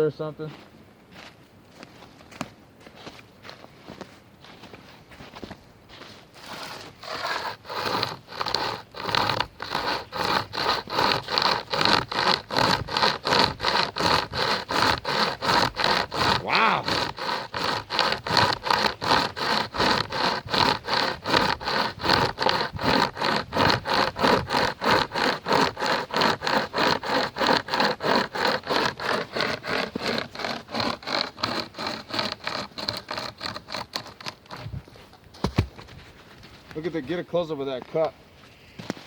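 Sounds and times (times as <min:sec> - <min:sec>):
hand chainsaw rasping on wood: 0:06.4 - 0:35.0.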